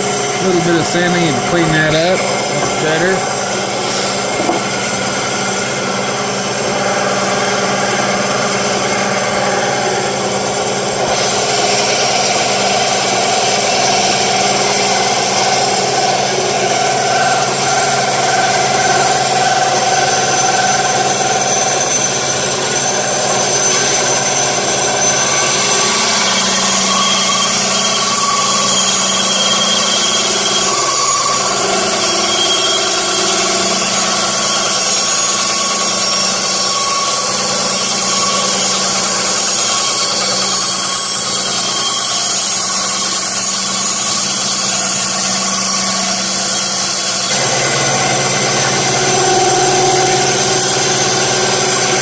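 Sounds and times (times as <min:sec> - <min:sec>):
bandsaw running: 0:00.0 - 0:52.0.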